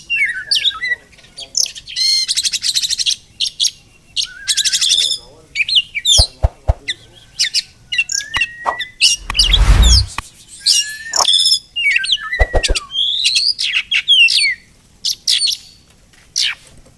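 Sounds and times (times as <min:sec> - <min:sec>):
loud rumbling burst: 0:09.1 - 0:10.2.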